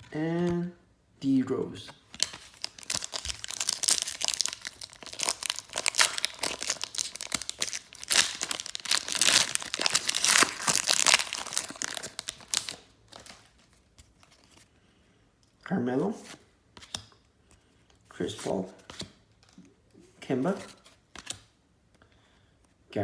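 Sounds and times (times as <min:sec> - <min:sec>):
foil wrapper crinkling and tearing: 0:02.2 - 0:13.6.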